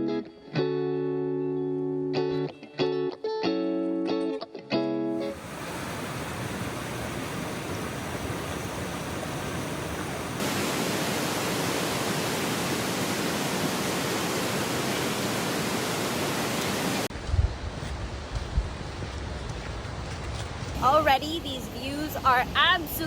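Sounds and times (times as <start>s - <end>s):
waterfall rushing: 5.3s - 17.1s.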